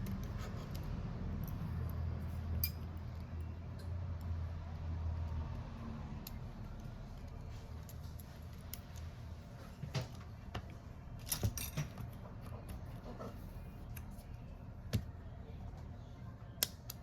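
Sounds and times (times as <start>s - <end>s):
metallic clinks of small tools: 2.6s - 3.5s.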